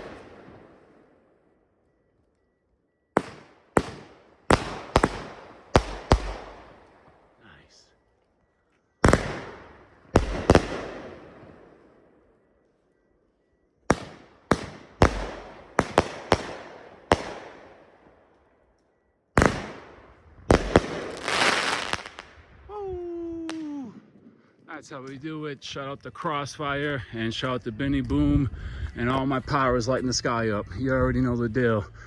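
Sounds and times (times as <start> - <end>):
fireworks crackling: 0.0 - 1.1, 3.2 - 7.9, 9.0 - 11.7, 13.9 - 17.6, 19.4 - 22.5
fireworks bangs: 0.0 - 1.4, 3.1 - 7.8, 9.0 - 12.2, 13.9 - 18.2, 19.4 - 22.6.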